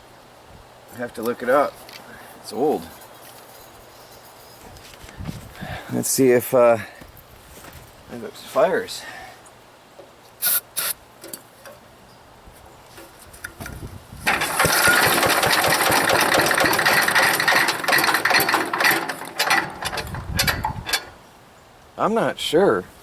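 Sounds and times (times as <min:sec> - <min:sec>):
gasoline engine cranking: 0:13.0 - 0:21.2.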